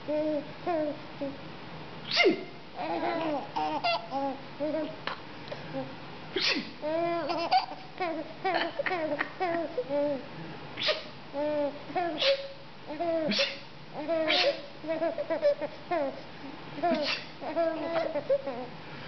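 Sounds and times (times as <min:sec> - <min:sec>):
man making sneeze-like sound: 0:02.1 - 0:02.5, 0:06.4 - 0:06.8, 0:10.8 - 0:11.2, 0:12.2 - 0:12.6, 0:13.3 - 0:13.7, 0:14.3 - 0:14.7, 0:16.9 - 0:17.4
babies giggling: 0:02.8 - 0:04.9, 0:06.9 - 0:09.9, 0:16.8 - 0:18.6.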